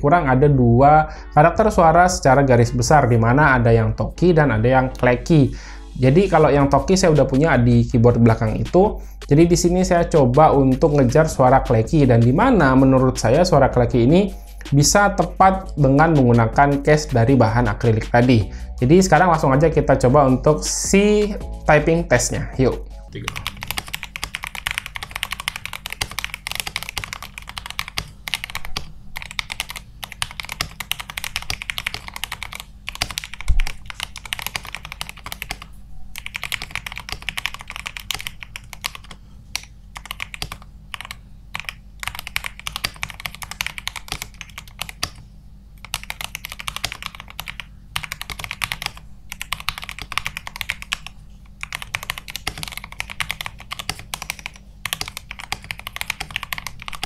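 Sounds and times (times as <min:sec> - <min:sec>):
mechanical keyboard typing: 0:23.2 - 0:45.2, 0:45.8 - 0:57.0.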